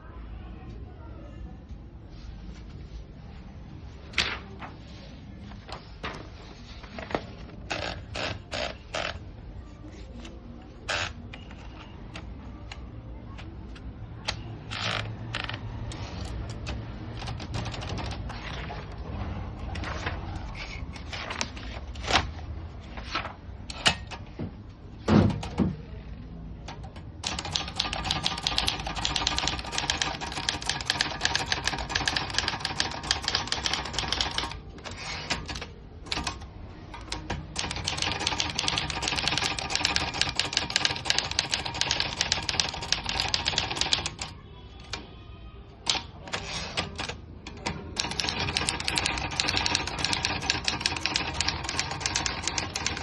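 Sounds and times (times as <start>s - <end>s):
manual typewriter typing: 14.6s - 18.9s, 26.7s - 45.0s, 45.8s - 53.0s.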